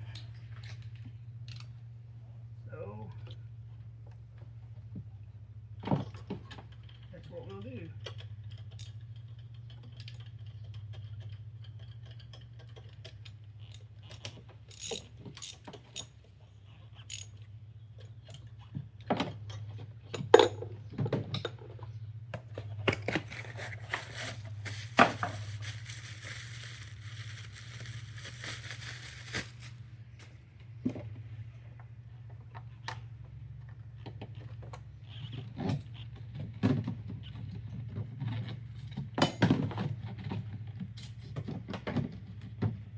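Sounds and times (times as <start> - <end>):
hand tools clinking on metal: 6.7 - 16.2, 17.0 - 17.5
ratchet clicking: 17.0 - 17.4.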